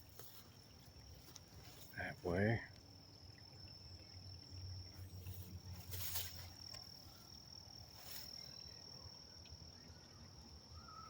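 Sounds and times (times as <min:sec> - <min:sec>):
short rustles: 0:05.2 - 0:06.8.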